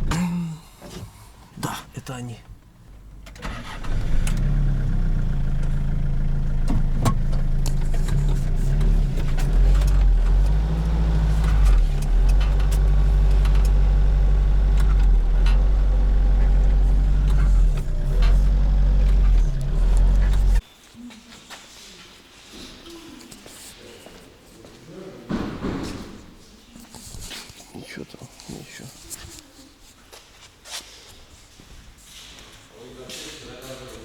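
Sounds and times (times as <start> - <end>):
diesel engine running: 2.8 - 20.6.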